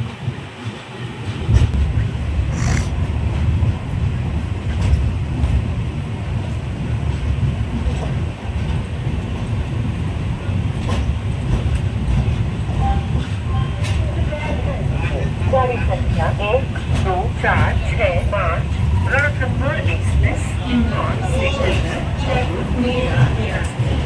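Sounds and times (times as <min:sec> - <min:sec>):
train wheels rumbling on track: 0:00.0 - 0:24.0.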